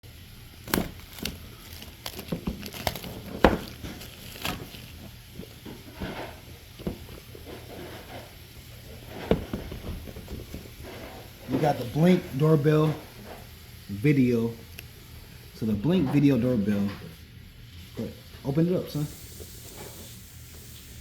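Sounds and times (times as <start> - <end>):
taps clicks and rustles: 0.6 - 12.0.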